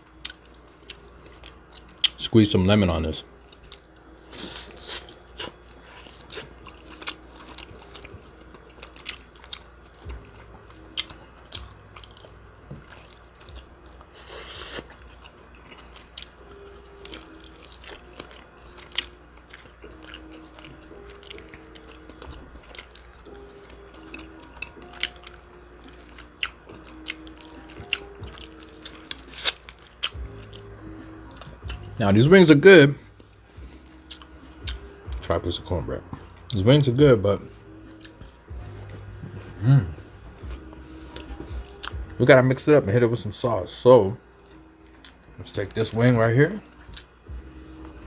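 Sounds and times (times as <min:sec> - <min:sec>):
quiet background music: 0:00.0 - 0:48.0
chewing crunchy food: 0:00.1 - 0:02.3, 0:03.4 - 0:31.9, 0:33.1 - 0:35.3, 0:37.8 - 0:39.4, 0:40.3 - 0:42.2, 0:46.6 - 0:48.0.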